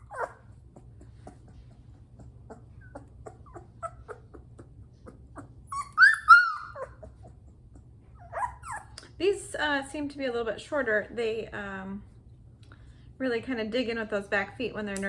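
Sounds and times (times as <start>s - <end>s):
puppy high-pitched cries: 0.0s - 0.5s, 5.0s - 7.4s, 8.2s - 9.0s
puppy whimpering: 0.0s - 9.0s.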